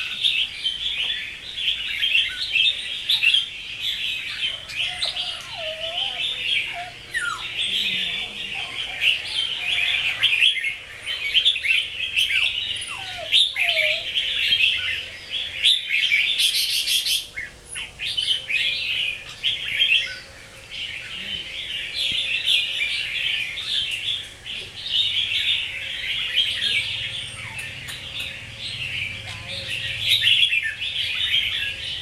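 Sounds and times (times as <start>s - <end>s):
bird singing and chattering: 0.0s - 32.0s.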